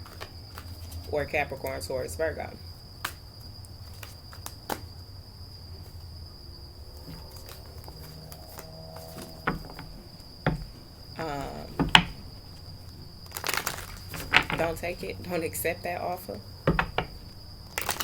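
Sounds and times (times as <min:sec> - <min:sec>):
sharp clicks and taps: 0:09.5 - 0:12.4, 0:13.9 - 0:15.1, 0:16.6 - 0:17.4.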